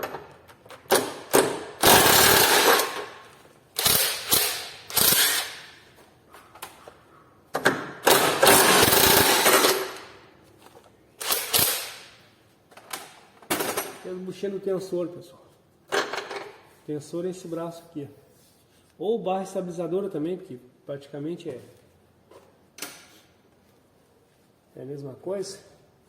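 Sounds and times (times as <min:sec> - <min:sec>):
ratchet wrench clicking: 0:01.8 - 0:03.0, 0:03.8 - 0:05.7, 0:11.2 - 0:12.1.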